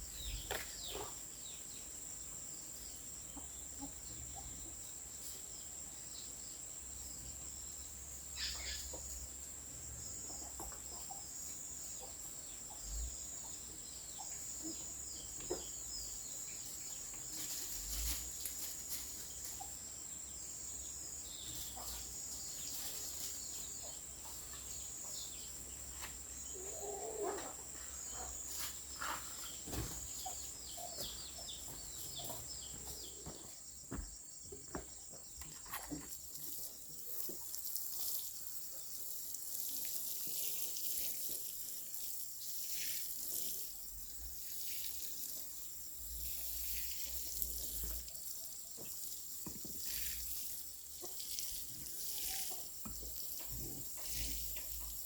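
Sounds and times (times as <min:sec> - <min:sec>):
bird calls: 0:08.4 - 0:09.0.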